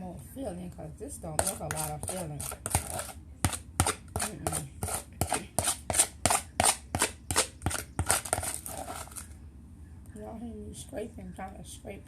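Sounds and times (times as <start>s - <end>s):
pie filling scraped from container: 1.4s - 9.3s.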